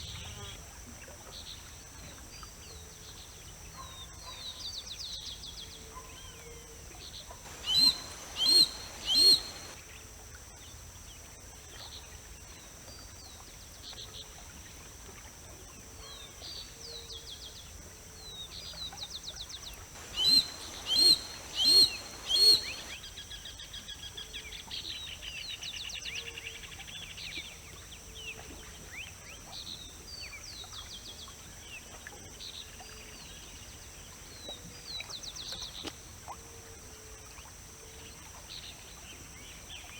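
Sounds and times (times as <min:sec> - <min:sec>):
hawk giving harsh calls: 0:07.5 - 0:09.7, 0:20.0 - 0:22.9
small birds chirping: 0:07.5 - 0:09.8, 0:20.0 - 0:23.0
steady high hiss: 0:07.5 - 0:09.8, 0:19.9 - 0:23.0.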